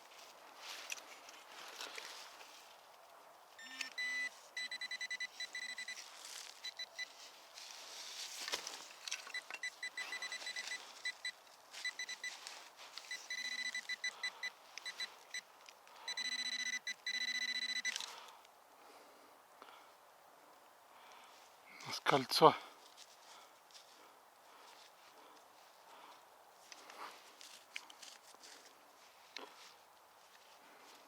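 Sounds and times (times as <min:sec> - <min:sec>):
metal detector beeping: 0:03.6 - 0:06.0, 0:06.6 - 0:07.2, 0:09.2 - 0:18.1.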